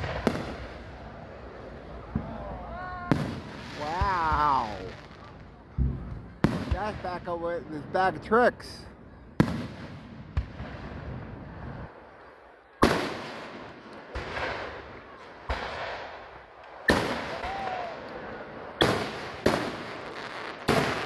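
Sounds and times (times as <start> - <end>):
crackle and rumble: 0.0 - 6.7
fireworks bursting: 0.0 - 21.0.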